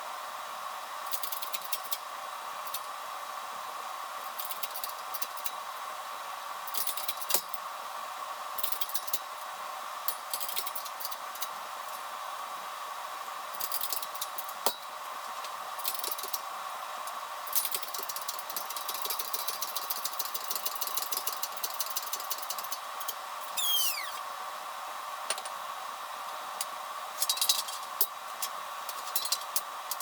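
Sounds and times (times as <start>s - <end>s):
steady mechanical hum: 0.0s - 30.0s
metal parts clicking and tapping: 27.2s - 30.0s.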